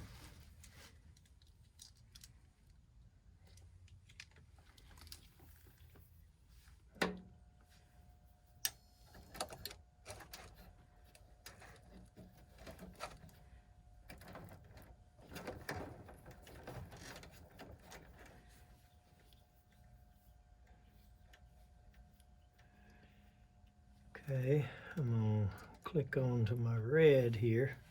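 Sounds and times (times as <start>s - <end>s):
faint steady tone: 5.8s - 27.9s.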